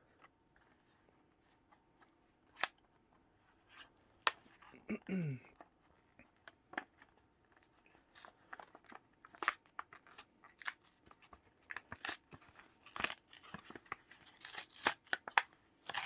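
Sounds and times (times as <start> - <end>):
plastic wrapper crinkling and tearing: 6.0 - 16.0.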